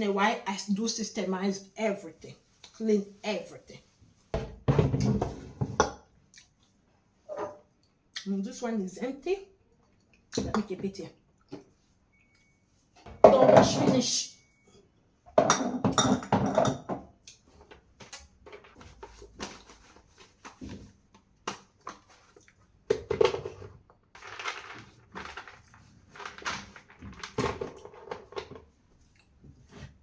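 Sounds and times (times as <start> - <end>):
containers clattering: 13.1 - 14.1, 22.9 - 28.7.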